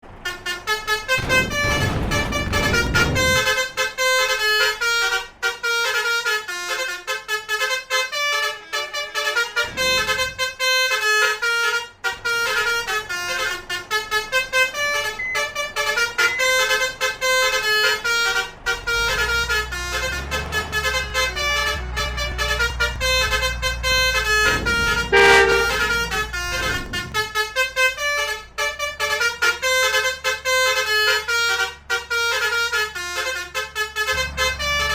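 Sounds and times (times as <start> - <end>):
bus engines rumbling: 0.0 - 34.9
multi-tone bus horns melody: 0.0 - 34.9.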